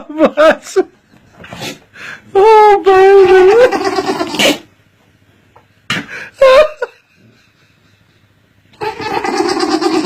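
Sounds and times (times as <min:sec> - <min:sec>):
dog sneezing: 0:04.0 - 0:04.7.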